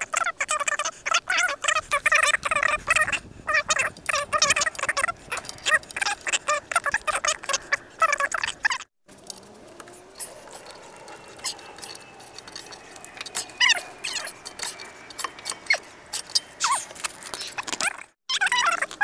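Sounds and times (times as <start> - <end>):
high-pitched squeaks: 0.0 - 19.0
tools clicking and clinking: 8.3 - 19.0.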